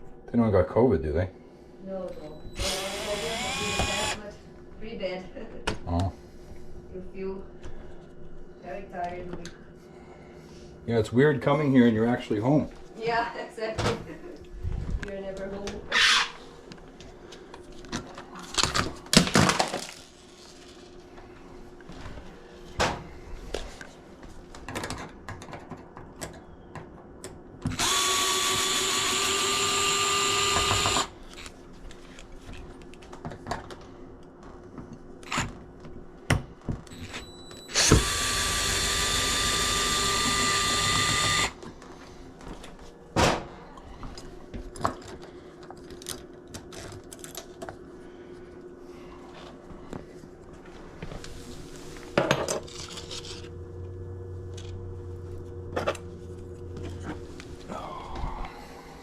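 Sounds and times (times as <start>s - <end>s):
power drill running: 2.6s - 4.2s, 27.7s - 31.2s, 37.7s - 41.6s.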